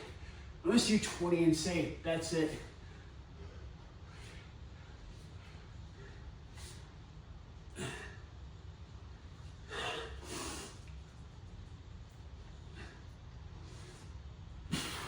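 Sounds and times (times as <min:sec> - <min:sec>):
man breathing hard: 0:09.6 - 0:11.0.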